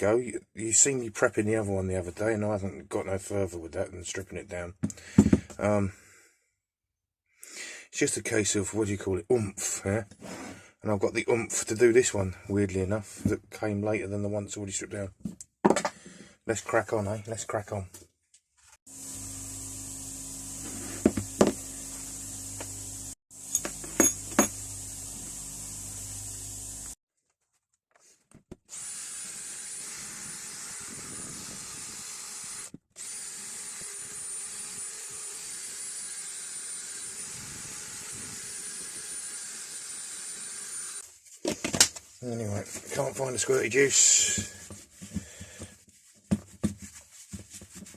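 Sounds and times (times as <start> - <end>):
electric power tool running: 18.9 - 27.0, 28.7 - 41.0.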